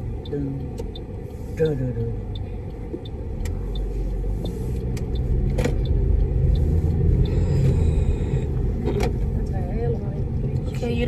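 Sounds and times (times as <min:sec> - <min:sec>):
light ticks and clicks: 0:00.0 - 0:07.8
road and engine rumble: 0:00.0 - 0:11.0.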